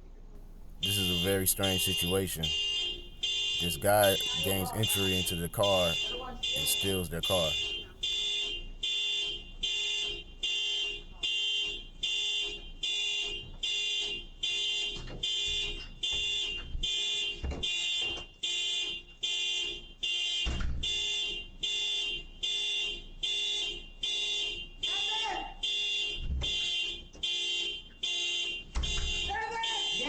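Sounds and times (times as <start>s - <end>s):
car alarm beeping: 0.5s - 8.2s.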